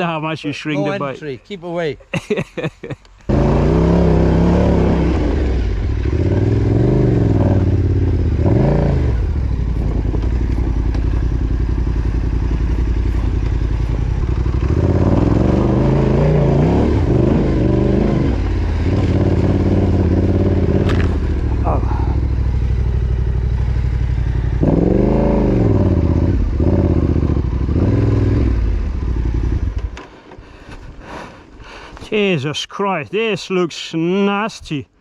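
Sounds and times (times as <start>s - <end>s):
motorcycle engine revving: 3.3s - 30.2s.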